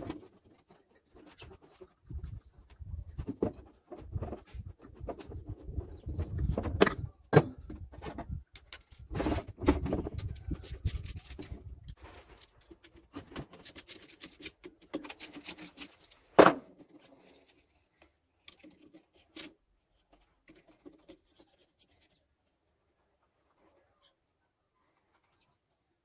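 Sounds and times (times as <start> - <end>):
parts scraping and clicking: 6.3 - 22.2.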